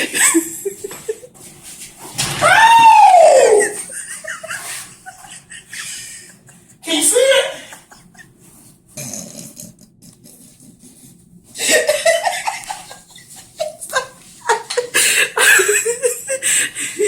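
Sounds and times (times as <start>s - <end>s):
people laughing: 0.0s - 1.3s, 3.4s - 8.3s, 11.6s - 17.0s.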